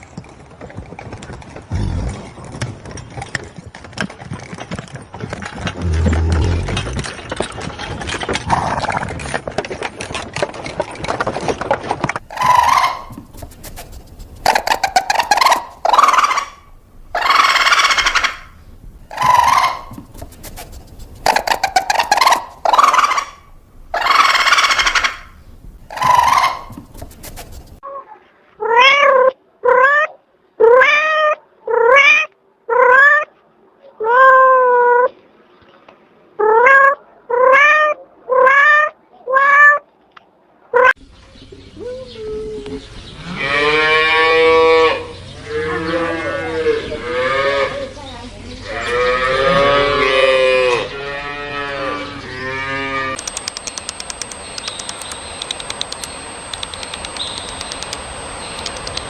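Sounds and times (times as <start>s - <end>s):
harsh animal calls: 12.3s - 18.5s, 19.1s - 25.3s, 25.9s - 33.3s
rapid clicking: 53.2s - 59.0s.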